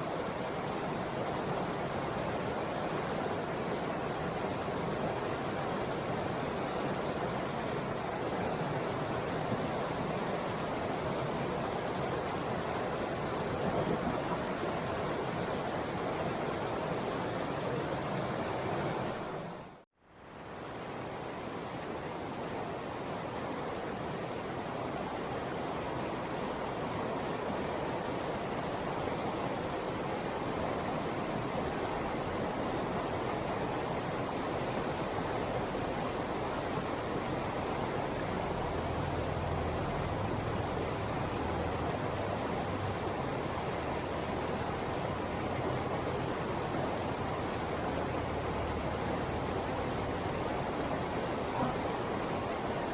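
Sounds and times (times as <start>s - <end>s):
river water rushing: 20.4s - 52.9s.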